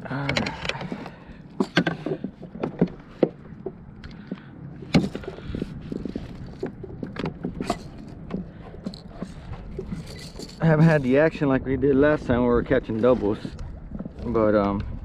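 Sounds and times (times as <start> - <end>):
fishing gear knocking: 0.0 - 10.6.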